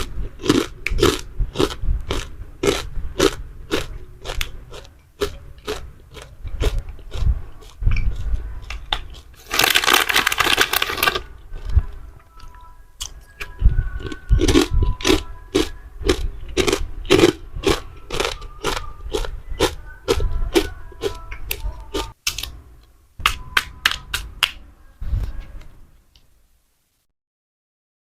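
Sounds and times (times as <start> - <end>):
crunching and chewing candy: 0.0 - 22.2
crackling: 2.1 - 11.8.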